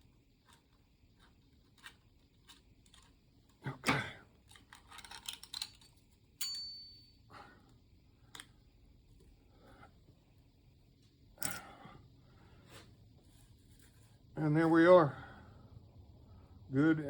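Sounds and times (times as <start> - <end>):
sharp metallic clink: 6.4 - 7.2.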